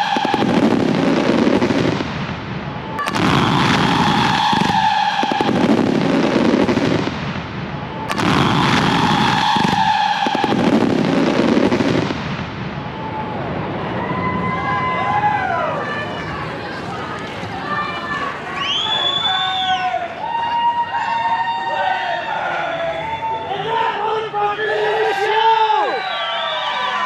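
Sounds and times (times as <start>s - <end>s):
fireworks bangs and crackling: 0.0s - 19.4s.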